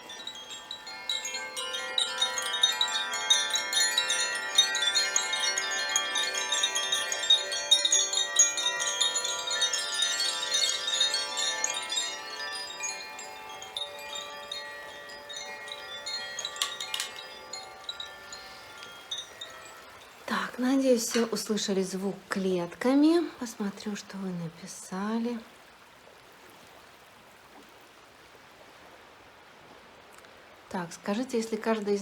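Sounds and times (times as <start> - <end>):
chimes tinkling: 0.0 - 21.7
sustained ringing tones: 0.0 - 22.1.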